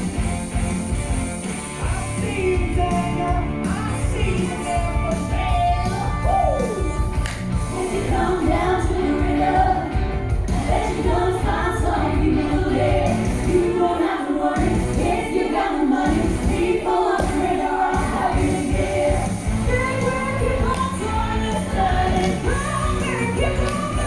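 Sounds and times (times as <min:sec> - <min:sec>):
live rock and roll band: 0:00.0 - 0:13.8
people singing together: 0:02.0 - 0:24.0.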